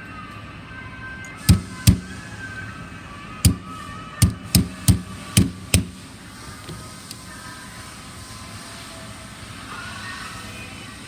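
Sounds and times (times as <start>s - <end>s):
hammer tapping a pin: 1.4s - 2.5s, 3.4s - 6.8s.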